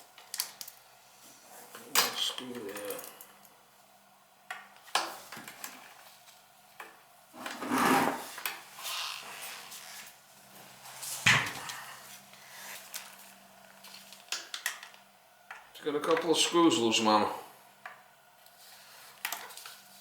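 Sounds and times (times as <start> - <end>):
faint steady hum: 0.0 - 20.0
scraping rub: 7.4 - 10.1.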